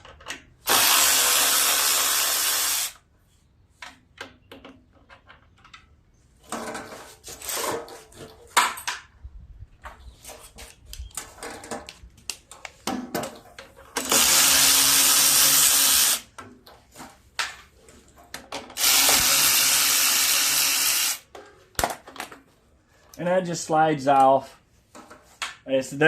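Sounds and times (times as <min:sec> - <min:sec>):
power drill motor whine: 0:00.7 - 0:03.0, 0:14.1 - 0:16.2, 0:18.8 - 0:21.2.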